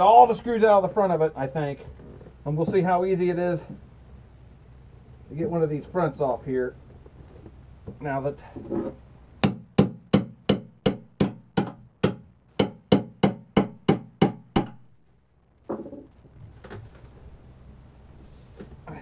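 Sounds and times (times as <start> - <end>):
hammer striking wooden panel: 9.4 - 14.8.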